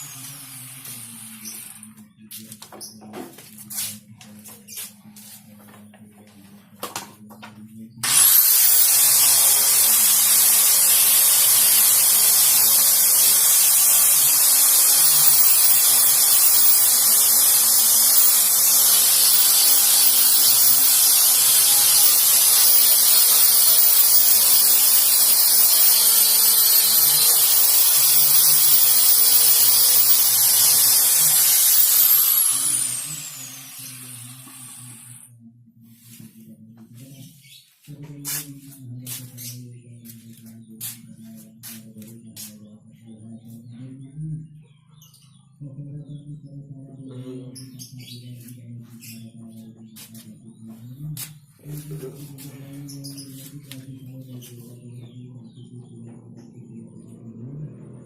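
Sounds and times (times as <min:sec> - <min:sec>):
power sander whirring on wood: 0:00.0 - 0:01.9, 0:08.0 - 0:35.3.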